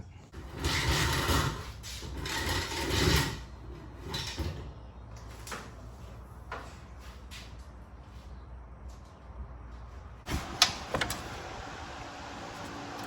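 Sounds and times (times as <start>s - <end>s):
tools and parts clunking: 10.3s - 11.5s.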